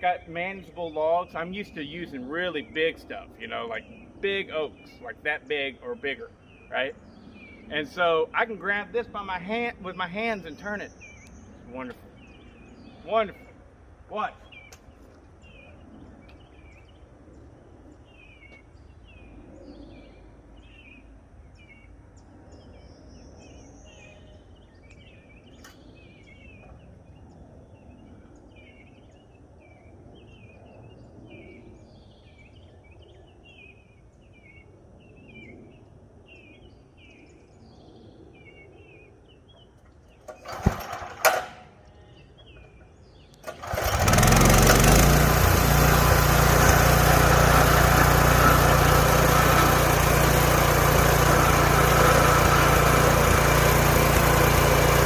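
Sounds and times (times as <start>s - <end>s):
small birds chirping: 0.0s - 41.2s, 41.8s - 55.0s
small gasoline engine running: 40.3s - 41.6s, 43.4s - 55.0s.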